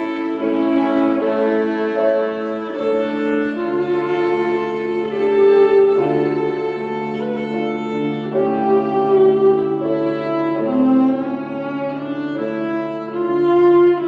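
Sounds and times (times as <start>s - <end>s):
instrumental music with sustained chords: 0.0s - 14.0s.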